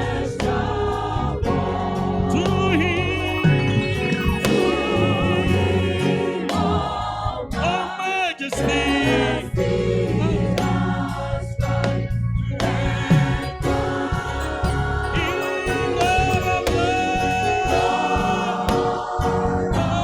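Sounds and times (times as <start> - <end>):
choir singing a hymn: 0.0 - 20.0
instrumental accompaniment: 0.0 - 20.0.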